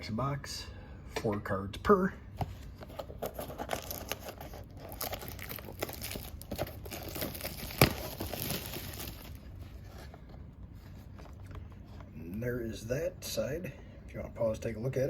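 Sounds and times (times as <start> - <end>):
packaging crinkling and tearing: 2.9 - 9.8.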